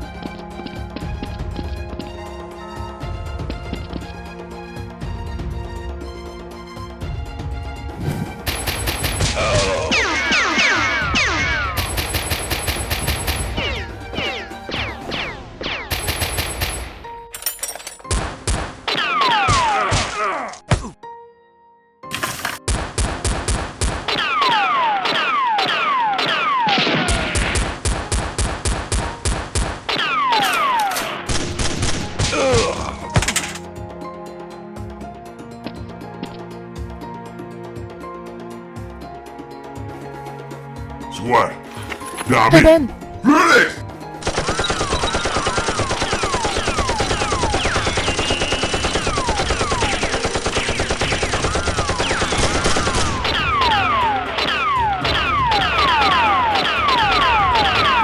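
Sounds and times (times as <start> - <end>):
background music: 0.0 - 58.0
rapid gunfire effects: 8.1 - 13.9, 15.1 - 17.0, 44.2 - 58.0.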